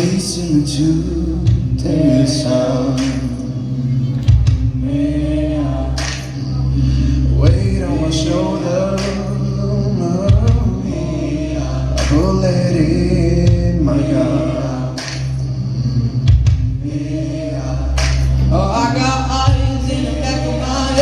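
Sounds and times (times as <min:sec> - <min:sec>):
choir singing: 0:00.0 - 0:21.0
low bass line: 0:00.0 - 0:21.0.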